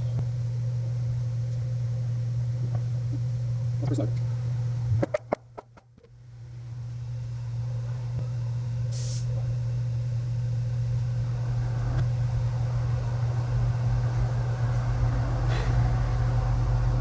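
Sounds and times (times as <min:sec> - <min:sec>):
brief hiss: 0:08.9 - 0:09.4.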